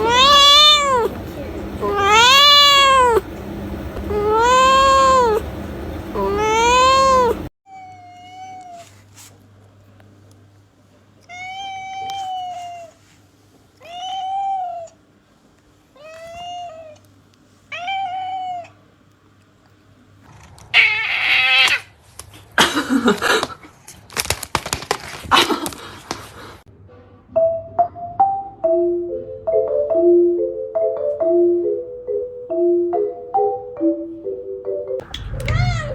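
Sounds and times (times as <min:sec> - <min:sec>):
cats meowing: 0:00.0 - 0:03.4, 0:04.0 - 0:09.0, 0:11.2 - 0:13.0, 0:13.8 - 0:15.0, 0:16.0 - 0:17.0, 0:17.7 - 0:18.8, 0:20.6 - 0:21.9, 0:35.0 - 0:35.9.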